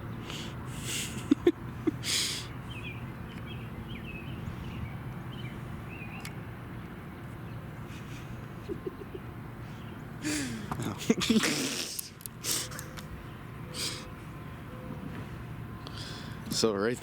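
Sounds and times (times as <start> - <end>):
small birds chirping: 2.0 - 10.3, 12.2 - 16.2.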